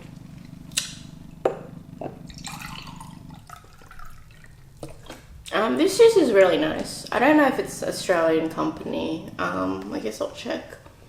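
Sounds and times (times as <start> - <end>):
steady low hum: 0.0 - 11.0
person gulping juice: 2.0 - 5.5.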